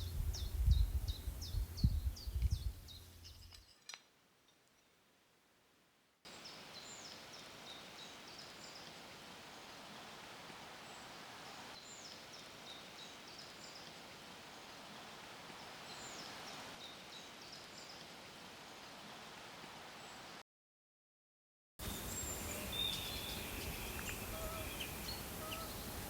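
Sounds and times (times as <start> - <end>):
small birds chirping: 0.0 - 3.8, 6.3 - 10.1, 10.8 - 15.0, 21.9 - 26.0
steady rushing hiss: 6.3 - 20.4, 21.8 - 26.0.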